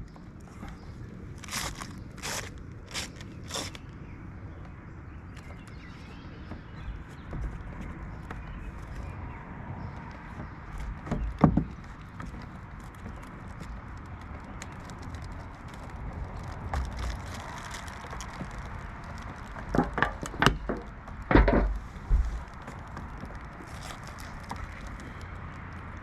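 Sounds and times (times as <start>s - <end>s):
knocks and clunks on roof: 6.4s - 9.2s, 10.0s - 13.7s, 19.6s - 23.1s.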